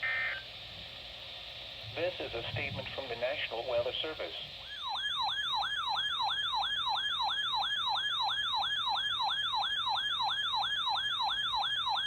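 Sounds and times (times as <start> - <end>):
falling electronic alarm tone: 4.7 - 12.0.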